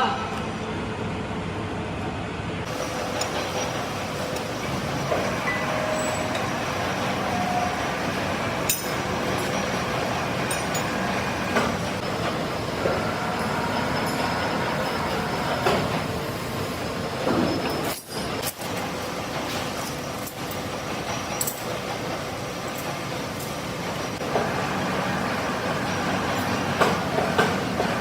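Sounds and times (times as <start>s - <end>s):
metalworking machinery running: 0.7s - 28.0s
sharp metallic clinks and knocks: 8.7s - 9.7s.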